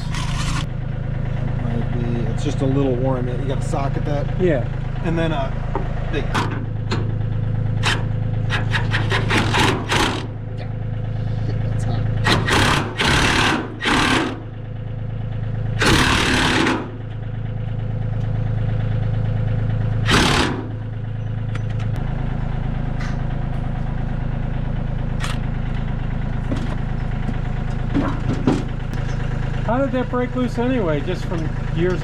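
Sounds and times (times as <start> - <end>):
engine idling: 0.0 - 32.0
impact wrench bursts: 7.8 - 10.4, 12.2 - 14.5, 15.8 - 17.0, 20.0 - 20.8.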